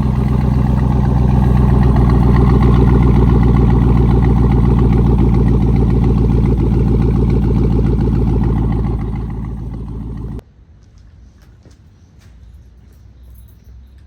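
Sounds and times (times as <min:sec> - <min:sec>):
engine running steadily: 0:00.0 - 0:10.4.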